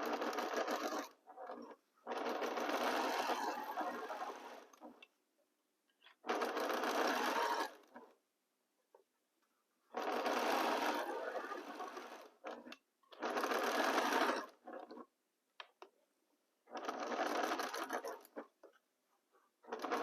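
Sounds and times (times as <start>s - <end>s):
sewing machine stitching: 0.0s - 5.1s, 6.0s - 8.2s, 9.9s - 15.1s, 16.6s - 18.8s, 19.6s - 20.0s.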